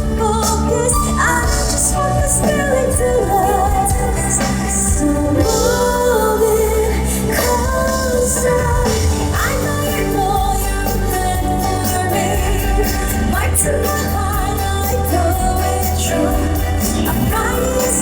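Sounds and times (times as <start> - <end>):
woman singing pop song: 0.0 - 18.0.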